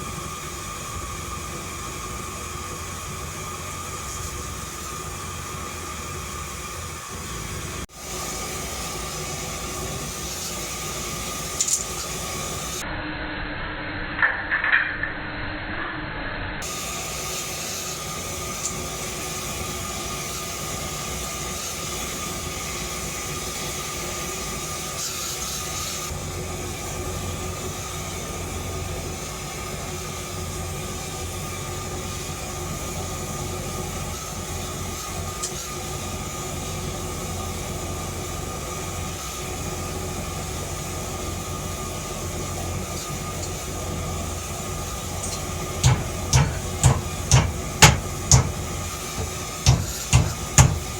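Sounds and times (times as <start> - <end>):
forge rushing and humming: 42.3 - 50.9.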